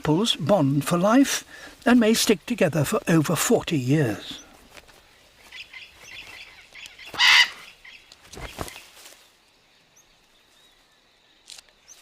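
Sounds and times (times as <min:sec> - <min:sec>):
macaws chattering: 0:00.0 - 0:08.9
macaw harsh squawk: 0:05.5 - 0:08.0.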